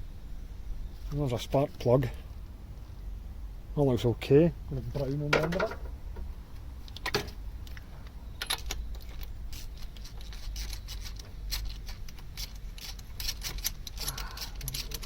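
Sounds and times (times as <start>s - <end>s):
metal tools clinking: 8.4s - 15.0s.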